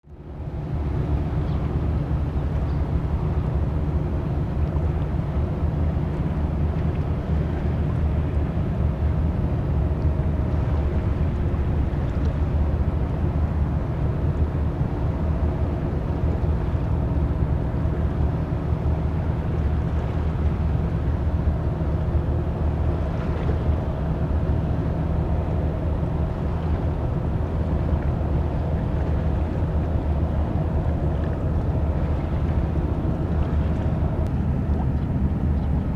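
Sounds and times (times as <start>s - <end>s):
ship engines rumbling: 7.4s - 35.9s.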